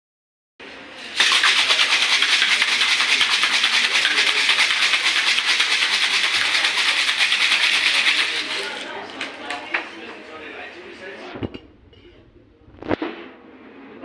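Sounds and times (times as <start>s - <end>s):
ice rattling in cocktail shaker: 1.0s - 9.3s.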